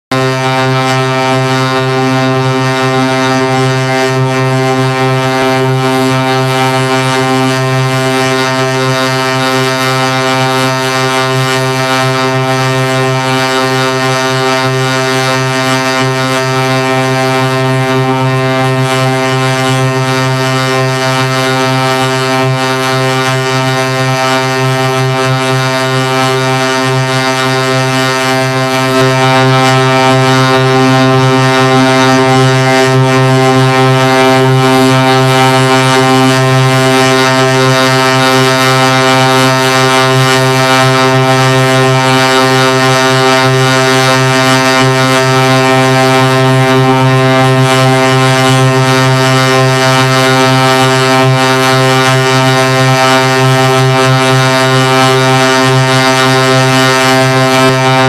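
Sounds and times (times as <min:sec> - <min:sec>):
low droning tone: 0:00.0 - 0:58.0.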